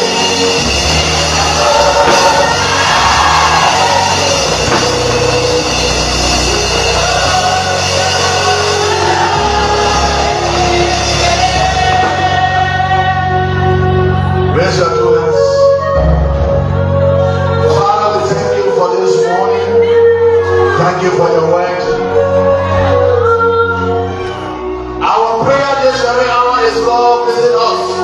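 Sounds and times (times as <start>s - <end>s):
people singing: 0.0s - 14.5s
worship band playing: 0.0s - 28.0s.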